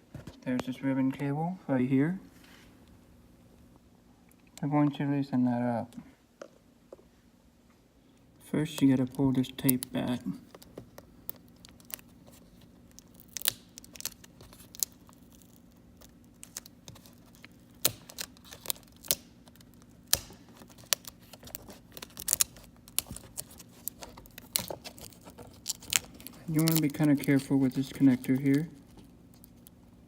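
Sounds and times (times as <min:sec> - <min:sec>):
tape being peeled: 0:08.6 - 0:30.0
small clicks and crinkles: 0:08.7 - 0:30.0.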